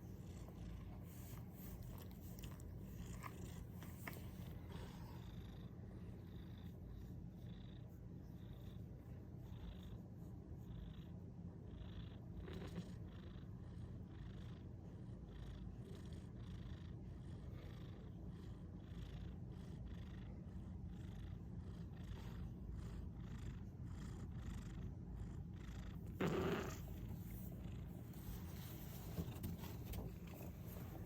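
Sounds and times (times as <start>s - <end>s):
pet snoring: 25.6s - 27.0s.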